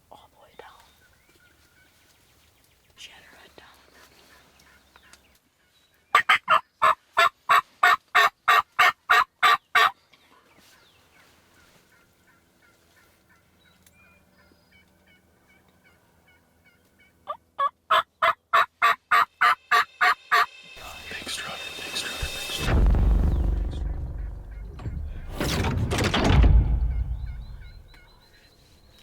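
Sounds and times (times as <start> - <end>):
turkey yelps: 6.1 - 10.0, 15.5 - 20.5.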